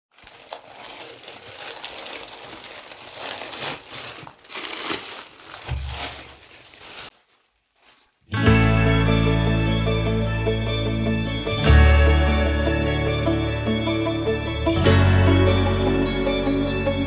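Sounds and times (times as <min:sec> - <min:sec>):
packaging crinkling: 0:00.1 - 0:08.3.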